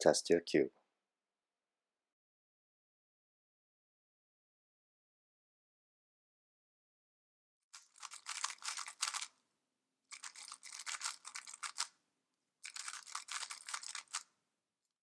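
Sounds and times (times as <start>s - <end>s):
speed cube plastic clicking: 7.8s - 9.3s, 10.1s - 11.9s, 12.6s - 14.3s.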